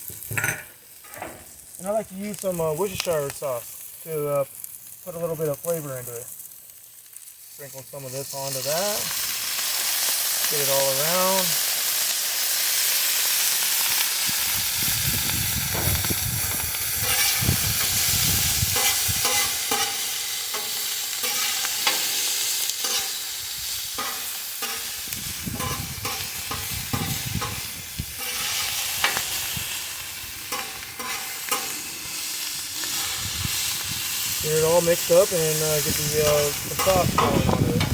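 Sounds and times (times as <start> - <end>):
food sizzling in oil: 0.0 - 37.9
utensil scraping metal: 17.0 - 23.3, 24.0 - 29.4, 30.5 - 32.0, 34.6 - 37.9.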